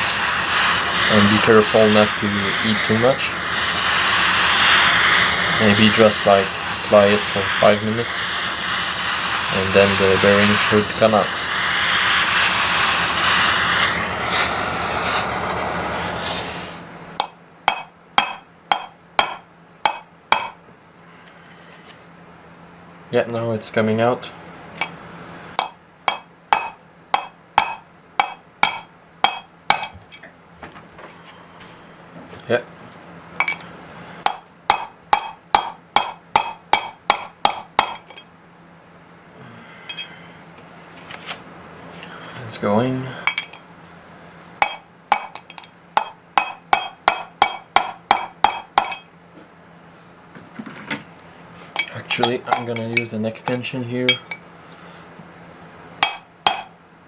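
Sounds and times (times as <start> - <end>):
torch flame hissing: 0.0 - 20.6, 33.1 - 38.2
hammer strikes on metal: 17.2 - 20.6, 25.6 - 30.0, 34.2 - 38.3, 44.6 - 49.1, 56.0 - 56.8
sharp taps on metal: 17.2 - 20.6, 25.6 - 30.3.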